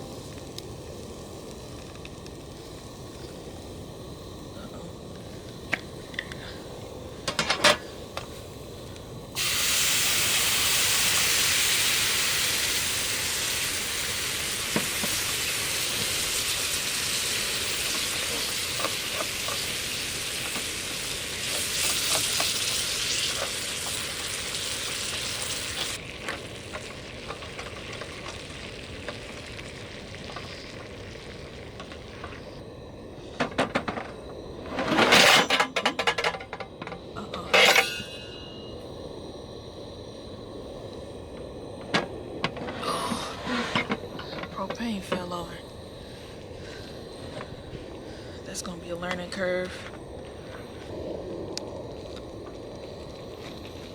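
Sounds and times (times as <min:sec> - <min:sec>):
food sizzling in a pan: 0:09.3 - 0:32.7
cookware clatter: 0:34.8 - 0:38.6.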